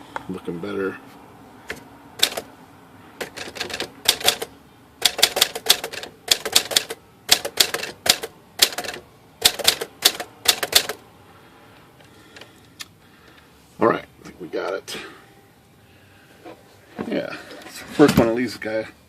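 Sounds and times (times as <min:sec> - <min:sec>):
manual typewriter typing: 0:02.2 - 0:02.5, 0:03.2 - 0:11.0.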